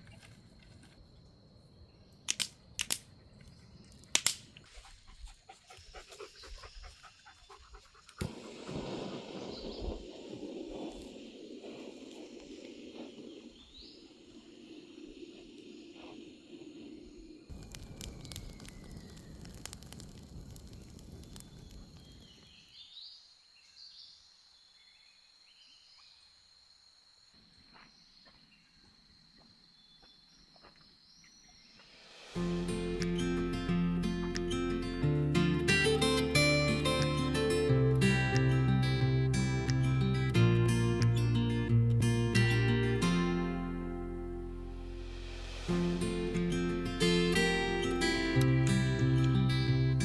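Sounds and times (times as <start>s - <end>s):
campfire crackling: 2.2s - 4.9s, 7.7s - 22.8s, 32.4s - 50.0s
sharp cracks: 2.3s - 3.1s, 3.9s - 4.6s, 17.5s - 22.6s
dog panting: 4.7s - 8.2s.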